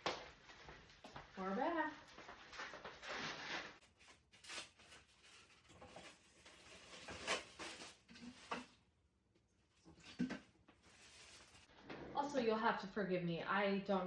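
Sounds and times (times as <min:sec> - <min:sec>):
faint rustling and handling: 0:00.2 - 0:08.8, 0:10.7 - 0:11.8.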